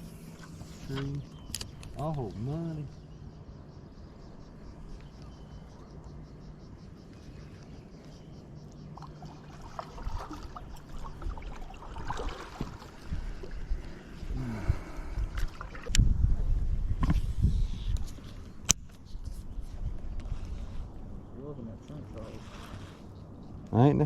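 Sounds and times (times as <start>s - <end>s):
water sloshing around kayak: 7.2s - 17.0s.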